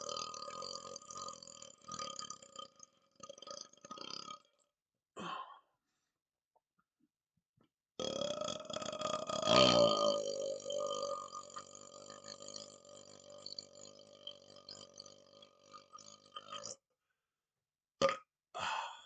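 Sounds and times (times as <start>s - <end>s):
man belching: 0.0s - 0.8s, 8.0s - 15.0s, 18.0s - 18.3s.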